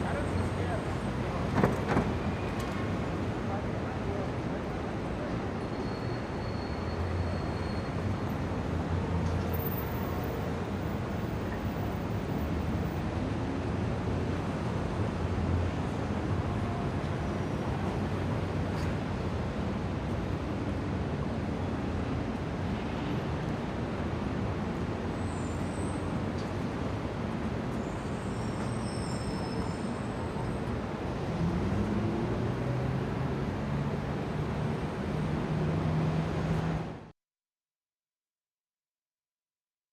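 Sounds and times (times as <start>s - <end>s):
road traffic: 0.0s - 37.1s
faint high squeals or horns: 5.5s - 8.4s, 25.1s - 26.2s, 27.8s - 30.8s.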